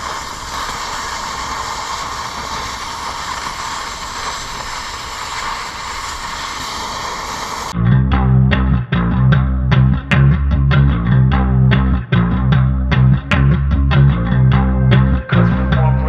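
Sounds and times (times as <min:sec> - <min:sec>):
cutting torch hissing: 0:00.0 - 0:07.8.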